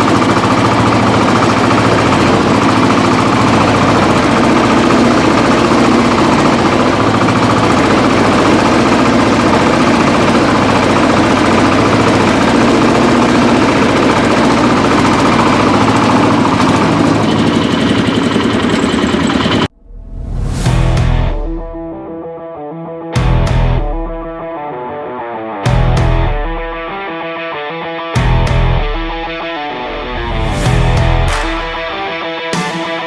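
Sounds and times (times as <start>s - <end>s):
tractor engine under load: 0.0s - 19.7s.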